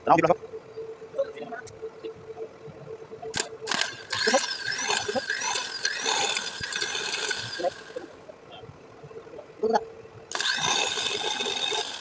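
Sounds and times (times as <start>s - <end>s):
sharp clicks: 3.3s - 8.0s
starter motor cranking engine: 10.3s - 12.0s.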